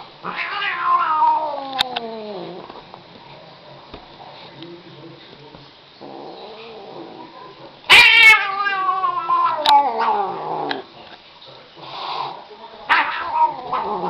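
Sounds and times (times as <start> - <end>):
cat yowling: 0.2 - 2.3, 7.9 - 10.6, 12.9 - 14.0.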